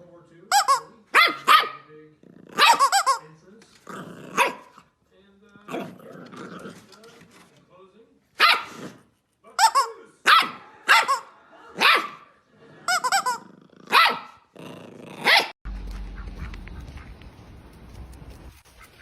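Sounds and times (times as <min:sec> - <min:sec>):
dog barking: 0:01.1 - 0:01.9, 0:02.5 - 0:03.2, 0:04.3 - 0:04.8, 0:08.4 - 0:09.0, 0:10.2 - 0:12.4, 0:13.3 - 0:14.4, 0:15.2 - 0:15.6.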